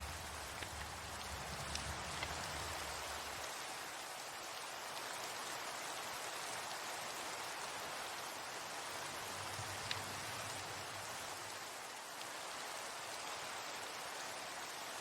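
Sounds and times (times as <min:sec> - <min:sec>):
single raindrops: 0:00.0 - 0:03.4, 0:09.3 - 0:11.4
steady rain: 0:00.0 - 0:15.0.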